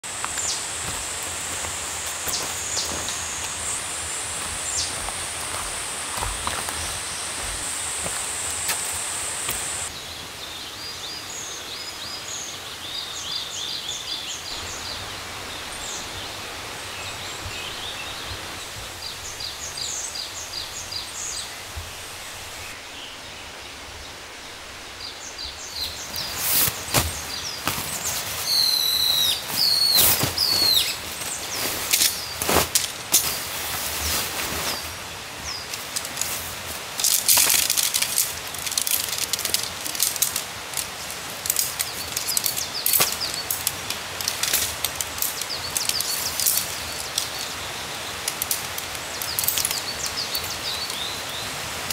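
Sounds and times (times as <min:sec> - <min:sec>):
high insect buzz: 0:00.0 - 0:09.9, 0:25.7 - 0:51.9
small birds chirping: 0:00.0 - 0:51.9.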